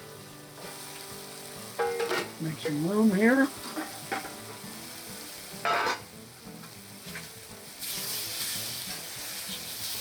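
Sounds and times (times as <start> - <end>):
meat sizzling in a pan: 0.0 - 10.0.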